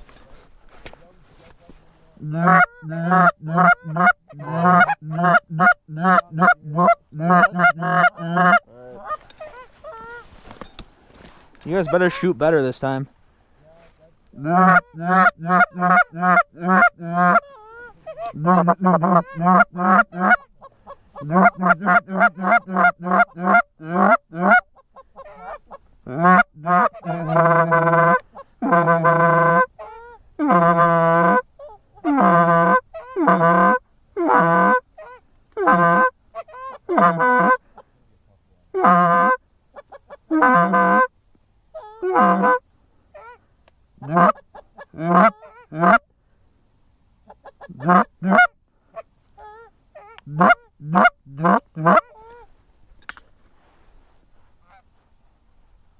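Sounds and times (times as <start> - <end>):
goose honking: 2.2 - 10.4, 11.6 - 13.0, 14.4 - 37.6, 38.8 - 41.1, 41.8 - 43.4, 44.0 - 46.0, 47.3 - 52.5.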